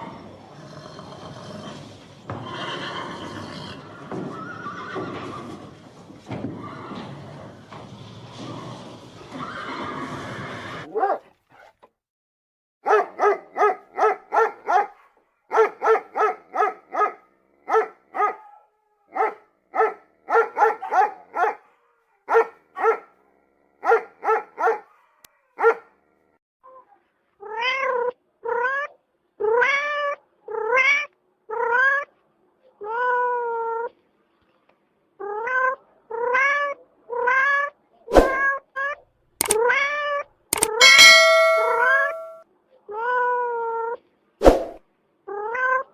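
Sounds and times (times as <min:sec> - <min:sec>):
sharp clicks: 0:39.4 - 0:39.6, 0:40.6 - 0:40.9.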